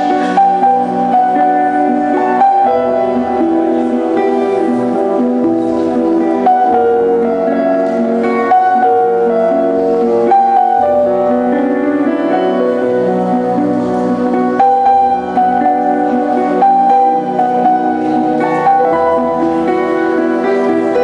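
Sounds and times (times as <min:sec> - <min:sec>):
slow piano-like keyboard music: 0:00.0 - 0:21.0.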